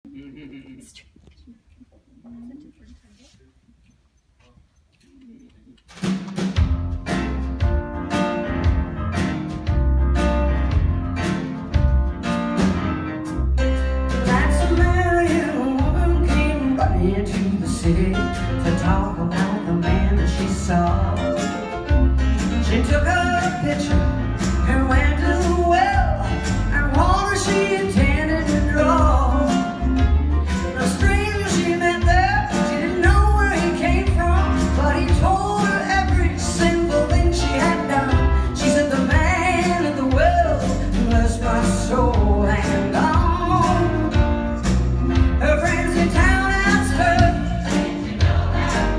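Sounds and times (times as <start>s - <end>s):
live band music: 5.8s - 48.9s
drum beat: 5.9s - 12.8s, 19.8s - 48.9s
steady bass: 6.6s - 48.9s
person singing: 22.5s - 29.8s, 30.5s - 44.2s.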